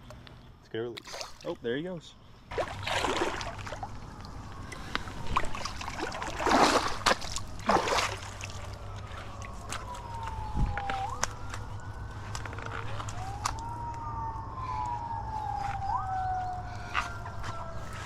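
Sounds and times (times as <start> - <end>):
splashes in water: 1.0 - 1.6, 2.5 - 10.0
siren wailing: 2.8 - 7.0, 8.1 - 18.0.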